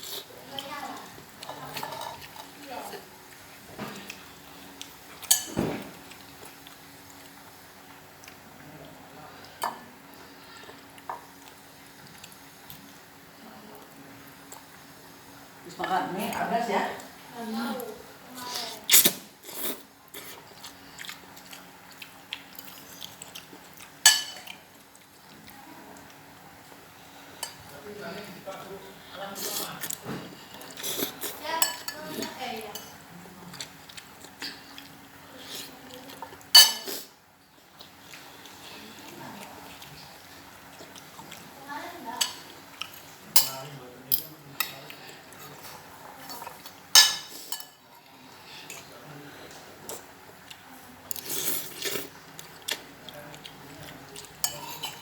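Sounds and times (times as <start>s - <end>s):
chewing noodles: 18.5s - 26.8s, 33.5s - 41.6s, 49.8s - 55.0s.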